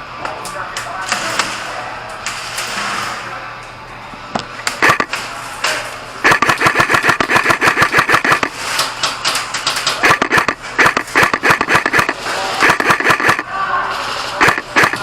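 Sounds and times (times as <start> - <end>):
airsoft guns firing bursts: 4.8 - 5.2, 6.2 - 8.6, 10.0 - 13.5, 14.4 - 15.0.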